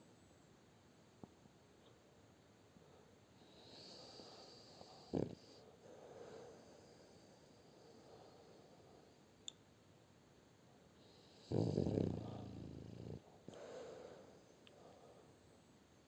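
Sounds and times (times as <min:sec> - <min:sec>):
dog snoring: 0:03.4 - 0:05.7, 0:11.0 - 0:13.6.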